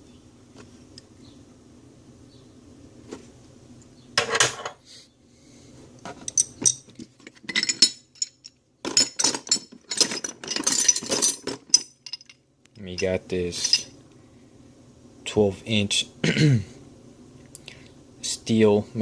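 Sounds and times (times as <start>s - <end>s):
metal tools clinking and clattering: 6.1s - 14.0s.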